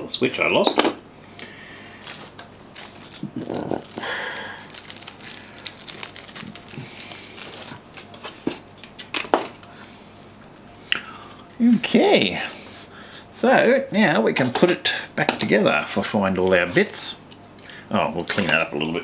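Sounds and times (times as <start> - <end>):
rustling: 2.0 - 8.4.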